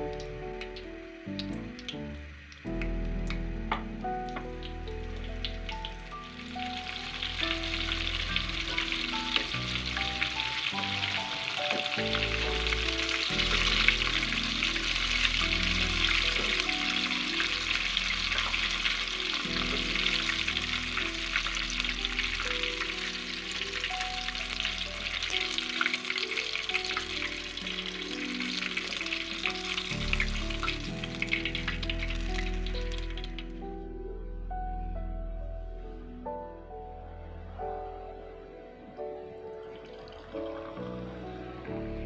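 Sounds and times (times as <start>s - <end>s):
food sizzling in hot oil: 0.0s - 33.5s
background music: 0.0s - 42.0s.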